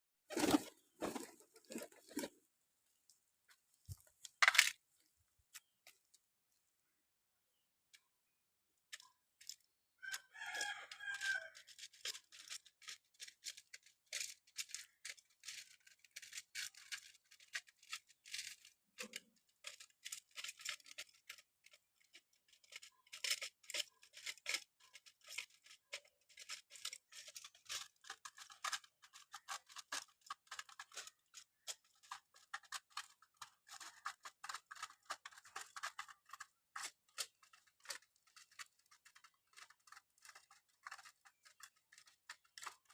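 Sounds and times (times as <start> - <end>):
pigeons pecking on hard surface: 0.3 - 2.4, 8.2 - 42.9.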